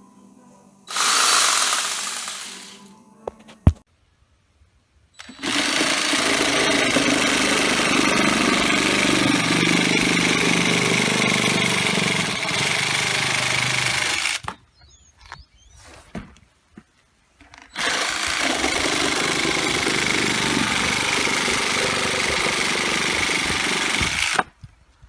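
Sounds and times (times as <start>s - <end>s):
reciprocating saw rattling: 0.9s - 2.9s.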